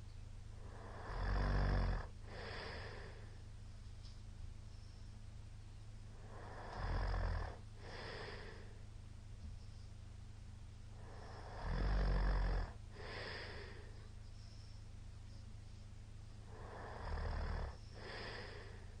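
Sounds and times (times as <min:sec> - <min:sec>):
man snoring: 0:00.6 - 0:03.2, 0:06.2 - 0:08.7, 0:11.0 - 0:13.8, 0:16.5 - 0:18.8
soft breathy breath: 0:02.2 - 0:05.2, 0:07.8 - 0:08.8, 0:12.9 - 0:19.0.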